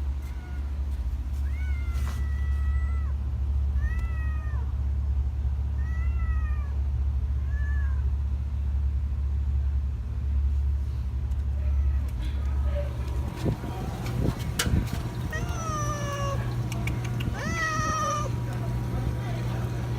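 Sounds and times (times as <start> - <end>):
steady low rumble: 0.0 - 19.9
cat meowing: 0.2 - 0.8, 1.4 - 3.2, 3.8 - 4.7, 5.8 - 6.8, 7.4 - 8.1, 11.6 - 12.2, 15.2 - 16.5, 17.2 - 18.4.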